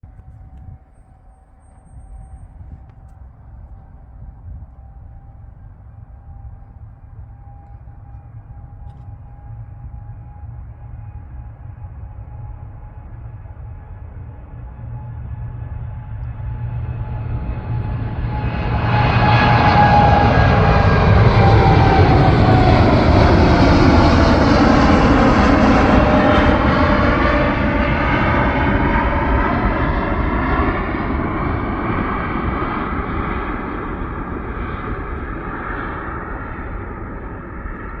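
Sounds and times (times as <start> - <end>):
jet engines roaring: 0.1 - 38.0
falling jet whine: 17.6 - 38.0.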